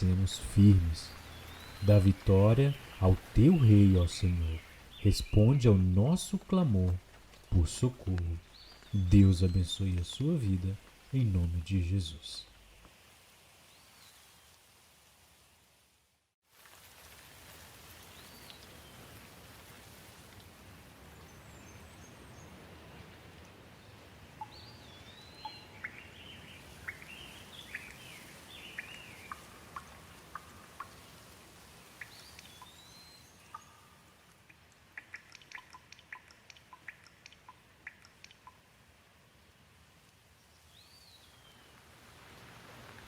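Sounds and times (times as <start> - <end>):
rain hissing: 0.0 - 15.3, 40.8 - 43.0.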